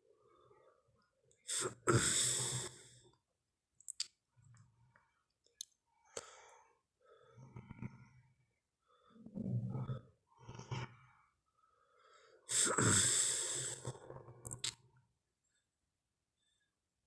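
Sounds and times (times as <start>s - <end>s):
breathy dinosaur growls: 9.0s - 11.2s.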